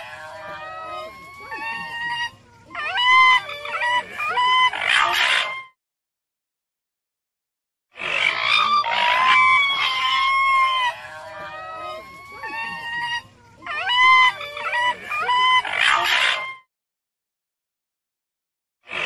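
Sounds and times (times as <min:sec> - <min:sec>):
raccoon dogs whining: 0:00.0 - 0:05.8, 0:08.2 - 0:16.7.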